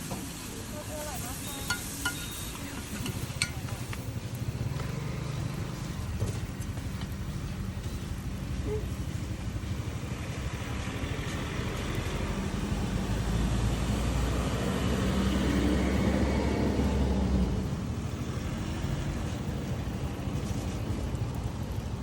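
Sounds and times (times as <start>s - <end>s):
street noise: 0.0s - 22.0s
vehicle engine humming: 0.0s - 22.0s.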